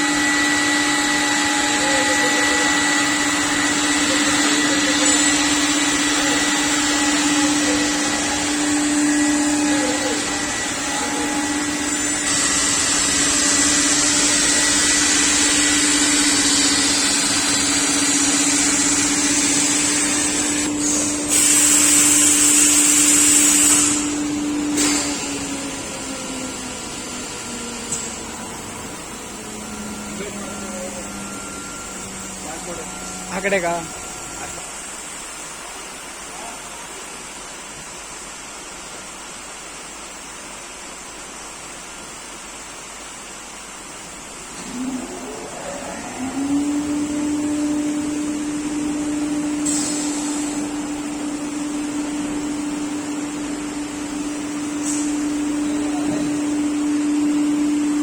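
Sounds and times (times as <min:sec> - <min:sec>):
hiss of cutting and dust extraction: 0:00.0 - 0:34.8, 0:45.4 - 0:58.0
router spindle whine: 0:00.0 - 0:34.8.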